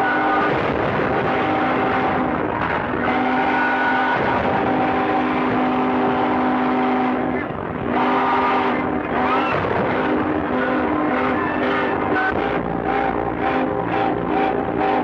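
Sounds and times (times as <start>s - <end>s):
ship's whistles: 0.0s - 15.0s.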